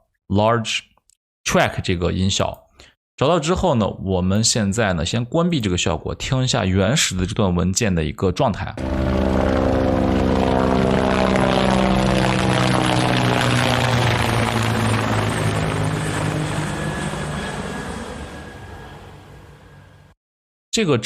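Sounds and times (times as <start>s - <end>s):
helicopter flying overhead: 8.8s - 20.2s.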